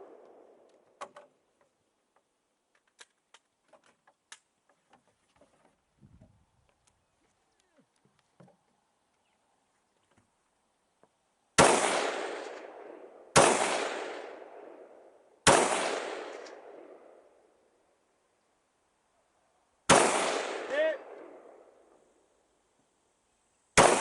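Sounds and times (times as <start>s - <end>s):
rifle shots with echo: 0.0s - 0.8s, 11.6s - 17.3s, 19.9s - 21.8s, 23.8s - 24.0s.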